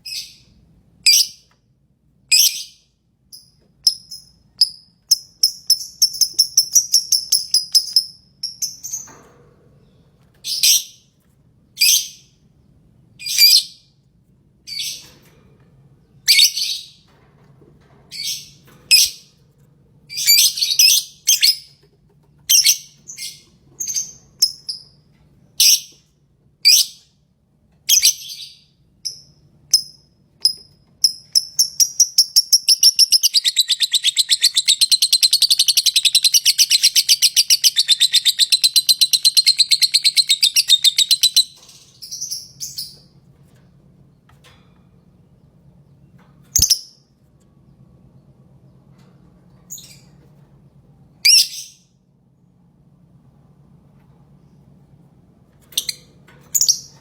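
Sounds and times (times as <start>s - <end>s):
lovebird chirping: 0.0s - 1.4s, 2.3s - 9.1s, 31.0s - 43.0s, 51.2s - 51.8s.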